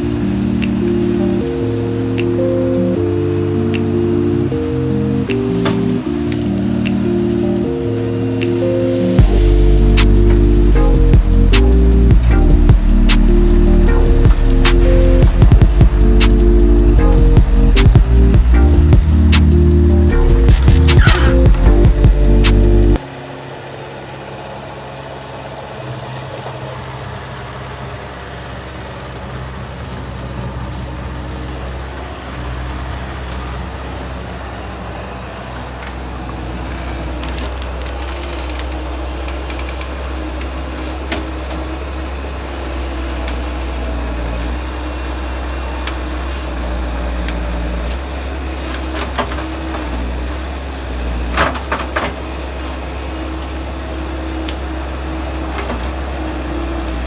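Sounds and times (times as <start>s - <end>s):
sharp cracks: 0.0s - 23.0s
skid steer engine running: 0.0s - 57.0s.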